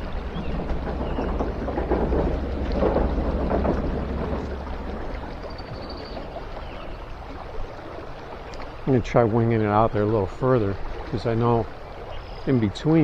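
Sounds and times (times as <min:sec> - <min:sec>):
steady low rumble: 0:00.0 - 0:08.3
river water splashing: 0:00.0 - 0:13.0.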